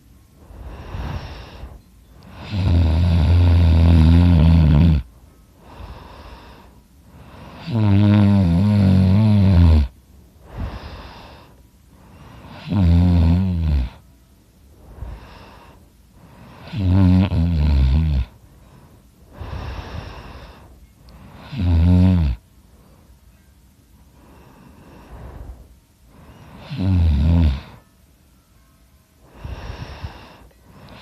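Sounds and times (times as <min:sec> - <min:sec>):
soft breaths: 0:00.0 - 0:31.0
man snoring loudly: 0:02.3 - 0:11.5, 0:12.2 - 0:14.0, 0:15.0 - 0:18.4, 0:21.2 - 0:22.4, 0:26.2 - 0:27.8.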